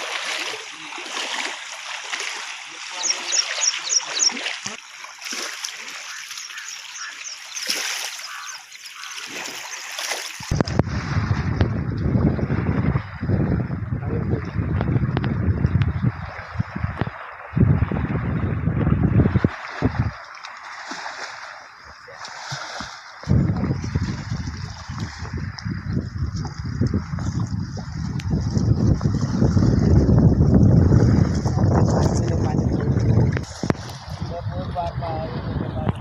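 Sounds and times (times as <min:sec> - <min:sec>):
water splashing and trickling: 0:00.0 - 0:36.0
wind buffeting microphone: 0:10.4 - 0:20.2, 0:23.2 - 0:36.0.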